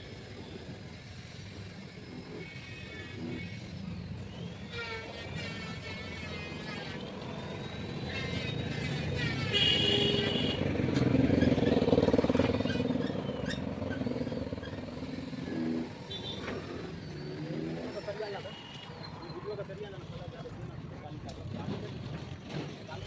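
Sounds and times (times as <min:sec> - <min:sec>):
motorcycle passing by: 0:05.4 - 0:18.5.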